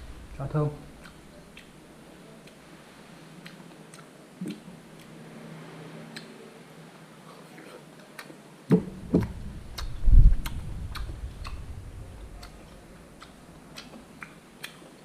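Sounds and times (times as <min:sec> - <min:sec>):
short low rumble: 0:00.0 - 0:01.0, 0:08.8 - 0:13.5
low thumps: 0:00.0 - 0:01.3, 0:08.7 - 0:13.5.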